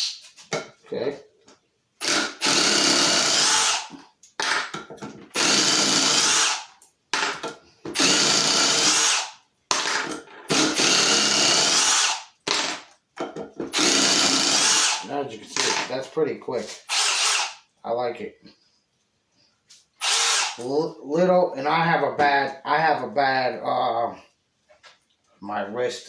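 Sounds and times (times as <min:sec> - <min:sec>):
impact driver driving screws: 0:02.0 - 0:04.7, 0:05.3 - 0:12.8, 0:13.7 - 0:15.0, 0:16.8 - 0:17.6, 0:20.0 - 0:20.6.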